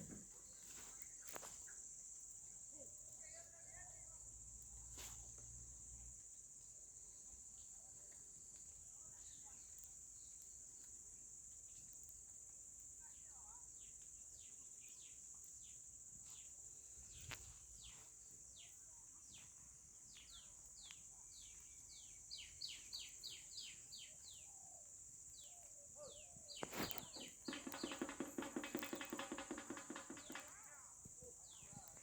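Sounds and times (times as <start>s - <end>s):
birds chirping: 14.4s - 32.0s
rapid rattling bird call: 25.4s - 32.0s
high-pitched insect drone: 26.1s - 32.0s.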